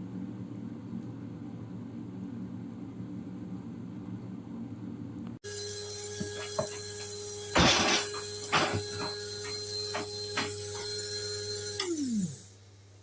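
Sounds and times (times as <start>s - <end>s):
blade grinder motor whining: 5.5s - 12.6s
hard pieces rattling inside grinder: 7.5s - 11.1s.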